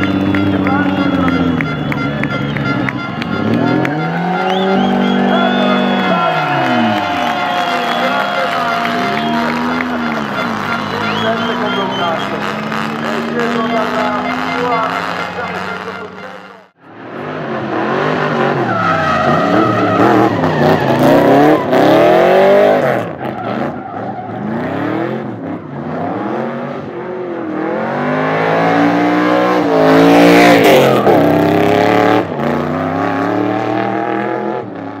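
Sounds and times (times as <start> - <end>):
car engine revving hard: 2.8 - 16.1, 17.0 - 35.0
tyre squeal: 18.5 - 24.6.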